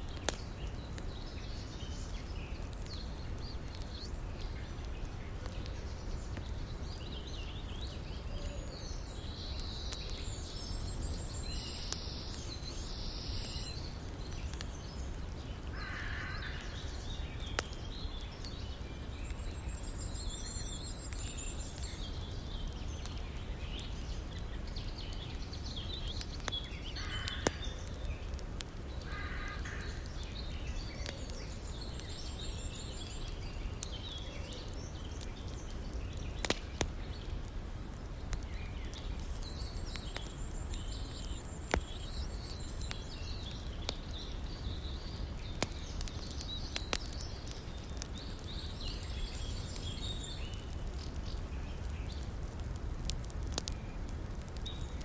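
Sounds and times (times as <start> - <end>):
campfire crackling: 0.0 - 55.0
birds calling: 10.8 - 19.5, 25.9 - 32.0.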